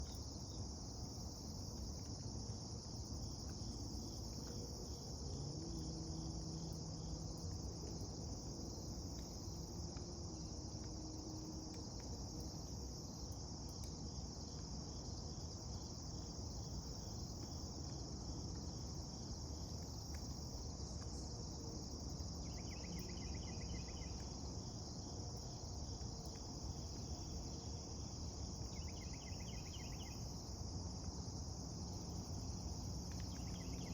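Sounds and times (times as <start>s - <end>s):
high-pitched insect chorus: 12.4s - 33.9s.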